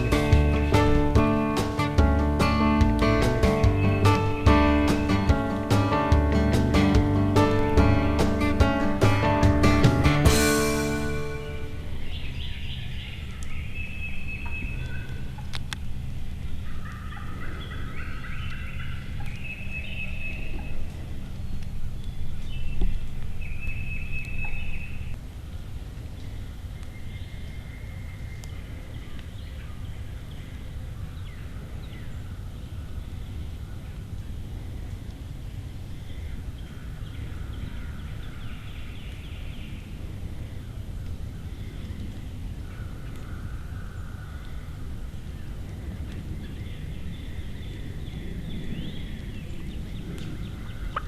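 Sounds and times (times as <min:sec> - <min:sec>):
bird calling: 0:00.0 - 0:15.6, 0:16.4 - 0:25.2
wind rumble on microphone: 0:28.6 - 0:51.0.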